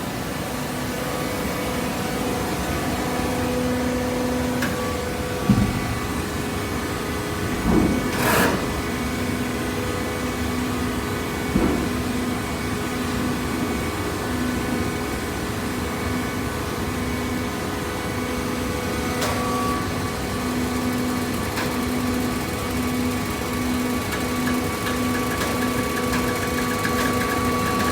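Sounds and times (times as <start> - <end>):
hydraulic baler motor hum: 2.8 - 9.0, 18.6 - 27.9.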